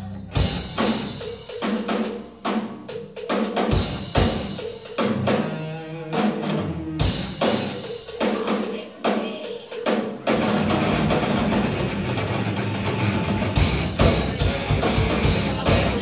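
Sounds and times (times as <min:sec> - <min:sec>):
low bass notes: 0:00.0 - 0:01.0, 0:10.4 - 0:16.0
drum kit beat: 0:00.0 - 0:05.6, 0:06.2 - 0:16.0
rock band playing live: 0:00.0 - 0:16.0.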